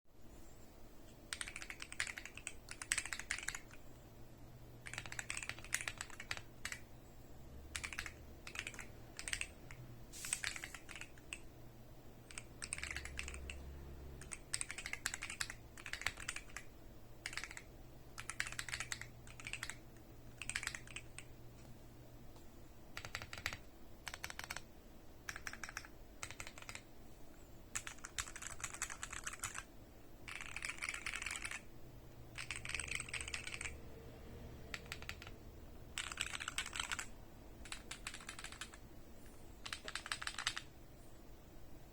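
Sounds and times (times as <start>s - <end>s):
mechanical keyboard key clicks: 32.4s - 33.7s, 34.7s - 35.3s, 36.0s - 38.8s, 39.6s - 40.7s.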